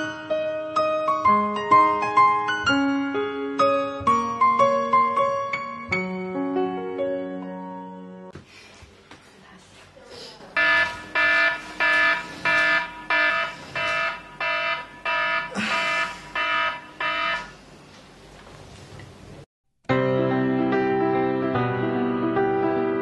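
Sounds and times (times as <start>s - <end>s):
electronic alarm beeping: 10.6s - 17.5s.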